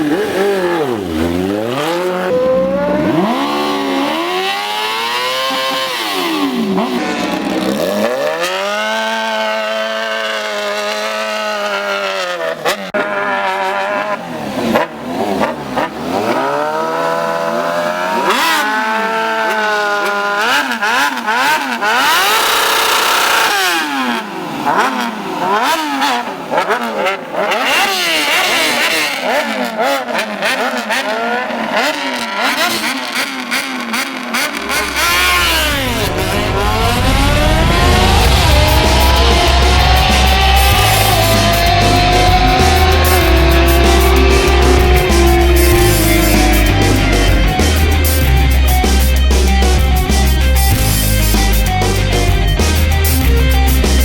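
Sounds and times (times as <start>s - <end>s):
motorcycle engines revving: 0.0s - 54.0s
deep low rumble: 34.6s - 50.9s.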